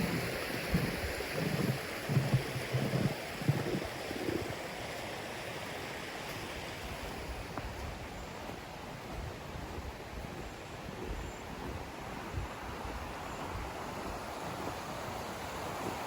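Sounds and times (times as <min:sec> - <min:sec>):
soft low thumps: 0:00.0 - 0:04.5
stream rushing over cascades: 0:00.0 - 0:10.1.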